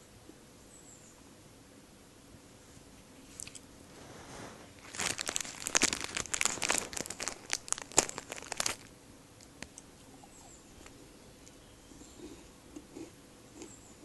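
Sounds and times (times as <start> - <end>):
crinkling crackling rustle: 2.8 - 10.1.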